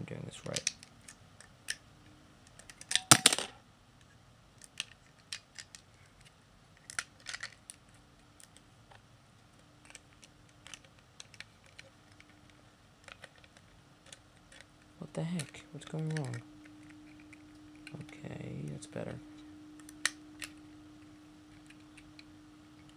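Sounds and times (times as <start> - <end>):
plastic toy bricks clattering: 6.8 - 7.8.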